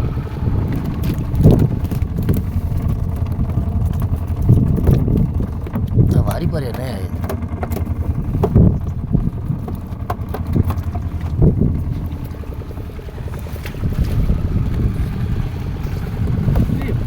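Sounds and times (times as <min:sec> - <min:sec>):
boat engine pulsing: 0:00.0 - 0:17.0
wind on microphone: 0:00.0 - 0:17.0.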